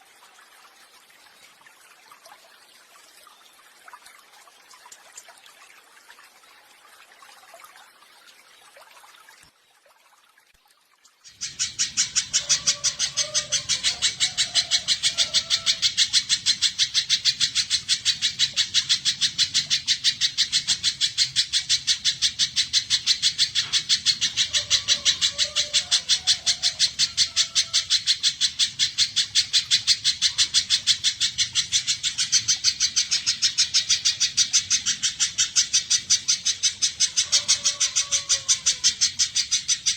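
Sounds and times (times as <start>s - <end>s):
bird calling sharp high chips: 11.3s - 39.9s.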